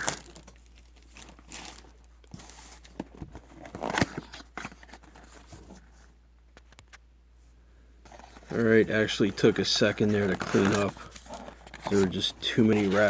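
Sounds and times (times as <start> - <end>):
plastic wrappers crinkling: 0.0 - 3.0, 8.4 - 13.0.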